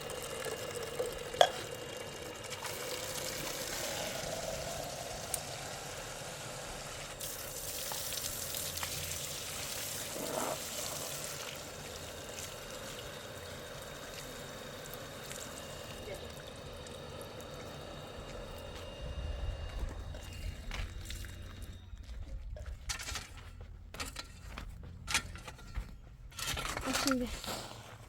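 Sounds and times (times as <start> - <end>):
water pouring and trickling: 0.0 - 21.7.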